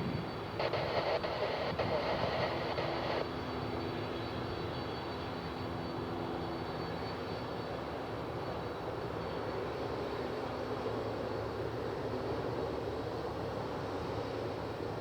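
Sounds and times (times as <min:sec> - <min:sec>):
jet engines running: 0:00.0 - 0:15.0.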